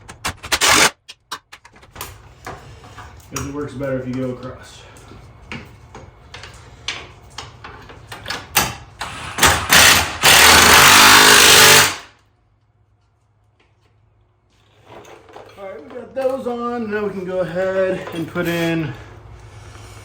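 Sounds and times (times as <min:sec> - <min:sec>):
impact wrench driving bolts: 0:00.0 - 0:01.2, 0:09.0 - 0:12.0.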